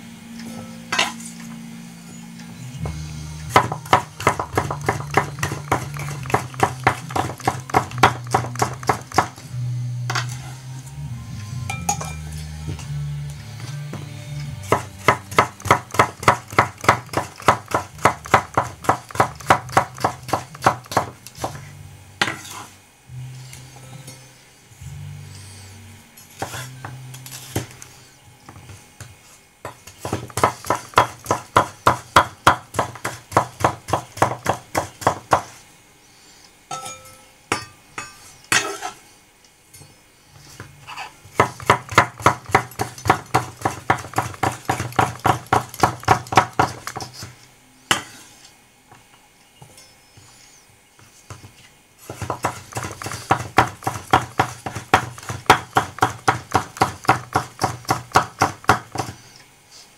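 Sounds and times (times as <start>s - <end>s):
knife chopping on cutting board: 2.8s - 9.4s, 14.6s - 22.7s, 29.7s - 35.6s, 41.3s - 48.3s, 51.3s - 59.2s.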